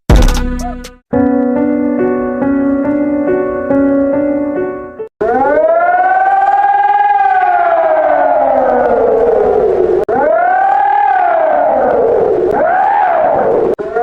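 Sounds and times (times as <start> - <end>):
held keyboard notes: 0.1 - 5.1
civil defense siren rising and falling: 5.2 - 14.0.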